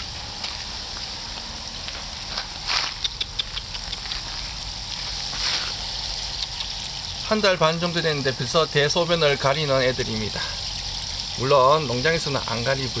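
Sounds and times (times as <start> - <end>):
hose spraying water: 0.0 - 13.0
faint ticks: 2.9 - 5.0, 6.3 - 6.8.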